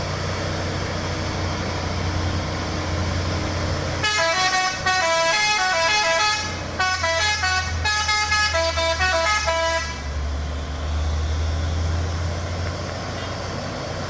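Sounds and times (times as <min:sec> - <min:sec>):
truck engine rumble: 0:00.0 - 0:14.0
musical truck horn melody: 0:04.0 - 0:10.2.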